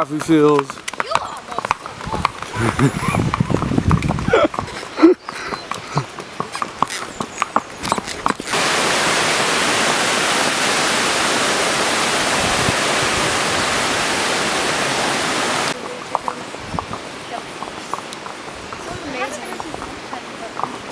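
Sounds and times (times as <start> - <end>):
horse hooves clopping: 0.0 - 9.0, 15.6 - 20.9
steady static hiss: 8.4 - 20.9.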